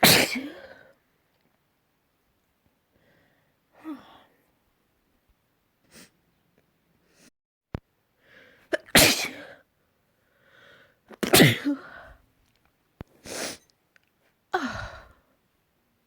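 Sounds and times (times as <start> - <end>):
person sneezing: 0.0 - 0.9, 8.7 - 9.6, 11.1 - 12.1
short catching breaths: 10.2 - 11.0.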